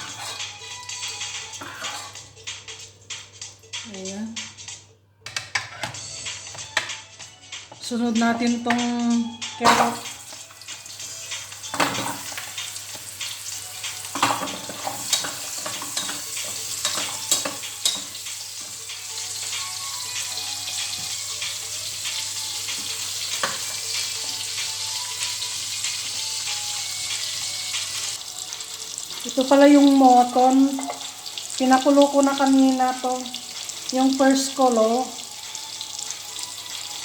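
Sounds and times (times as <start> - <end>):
utensil knocking and scraping pan: 0.0 - 0.5, 1.6 - 2.2
carrots sizzling in hot oil: 9.6 - 37.0.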